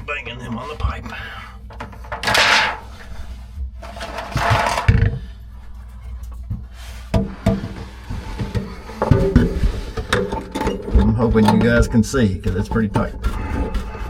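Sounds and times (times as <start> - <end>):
scraping and rustling: 1.9 - 14.0
tools knocking on plumbing: 6.5 - 13.3.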